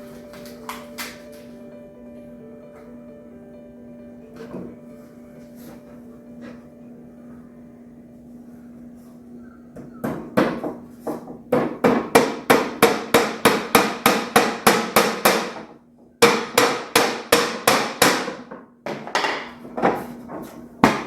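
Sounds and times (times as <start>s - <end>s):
hammer driving nail into wood: 11.6s - 15.6s, 16.2s - 19.4s.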